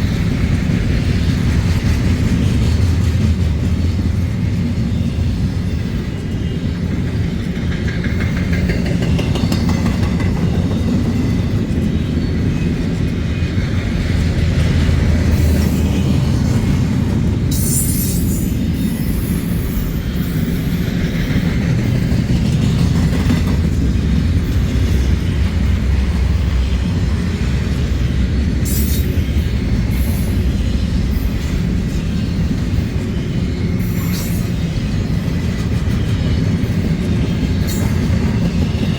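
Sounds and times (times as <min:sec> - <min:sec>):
train wheels rumbling on rails: 0:00.0 - 0:38.9.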